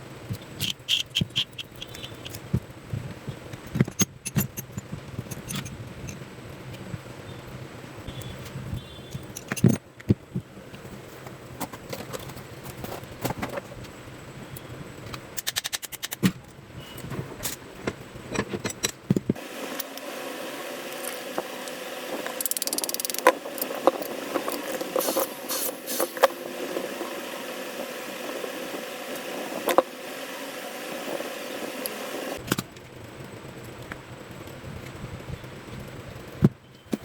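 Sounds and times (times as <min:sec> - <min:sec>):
metal parts clicking and knocking: 0:00.6 - 0:02.5, 0:03.5 - 0:06.2, 0:09.1 - 0:10.2, 0:15.0 - 0:16.6, 0:17.4 - 0:19.4, 0:22.4 - 0:25.3
small electric motor humming: 0:19.4 - 0:32.4.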